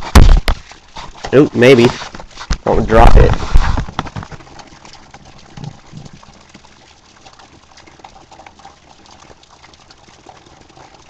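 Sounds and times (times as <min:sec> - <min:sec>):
steady rain hiss: 0:00.0 - 0:09.4
drip ticks: 0:04.5 - 0:11.0.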